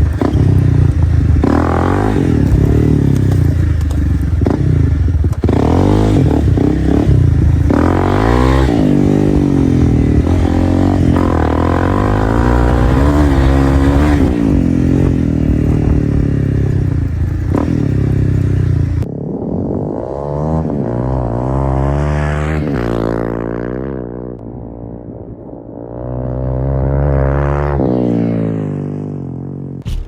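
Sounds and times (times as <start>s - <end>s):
motorcycle engine revving: 0.0s - 30.0s.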